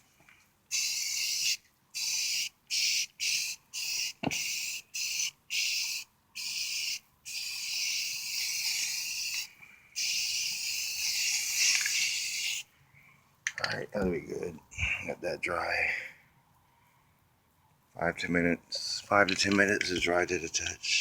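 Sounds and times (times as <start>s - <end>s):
aerosol can spraying: 0.7s - 12.7s.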